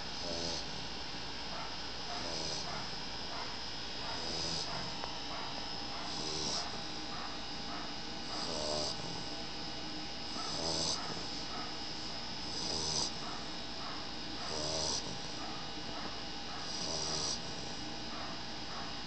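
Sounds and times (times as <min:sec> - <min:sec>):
snoring: 0:00.0 - 0:00.9, 0:02.2 - 0:02.9, 0:04.1 - 0:05.0, 0:06.0 - 0:06.8, 0:08.2 - 0:09.3, 0:10.3 - 0:13.4, 0:14.4 - 0:15.5, 0:16.6 - 0:17.8.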